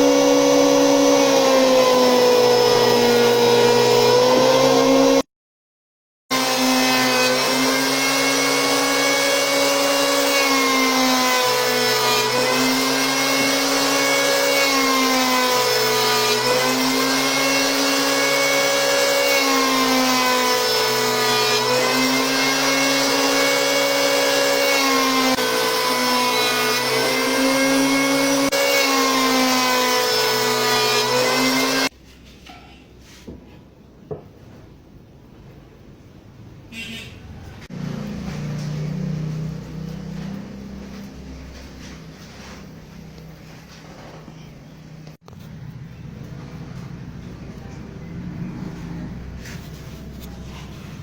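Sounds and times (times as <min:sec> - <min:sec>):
power planer motor whine: 0:00.0 - 0:05.2, 0:06.3 - 0:31.9.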